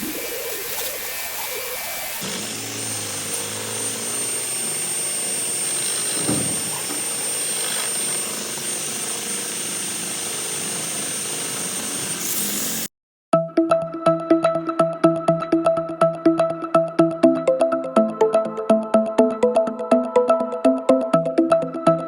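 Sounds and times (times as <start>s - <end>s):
power tool motor whining: 0.0s - 12.9s.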